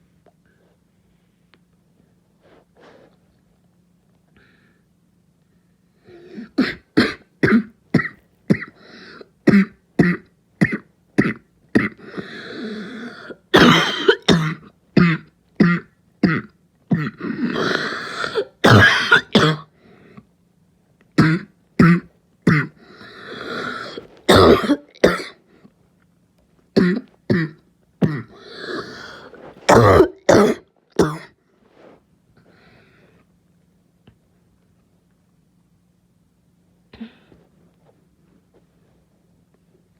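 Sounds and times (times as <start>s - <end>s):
noisy breaths: 0.4s - 3.4s, 22.8s - 24.3s, 28.3s - 29.7s, 31.6s - 33.4s
person coughing: 6.3s - 19.7s, 21.2s - 25.4s, 26.8s - 31.4s, 37.0s - 37.4s.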